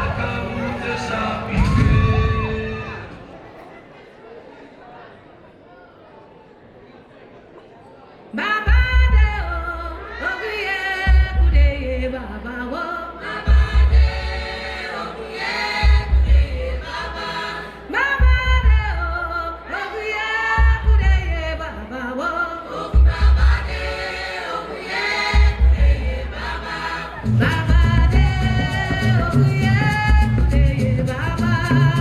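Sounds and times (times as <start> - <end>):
group singing: 0.0 - 3.3, 12.1 - 32.0
heavy low drum beat: 25.4 - 26.4, 27.2 - 32.0.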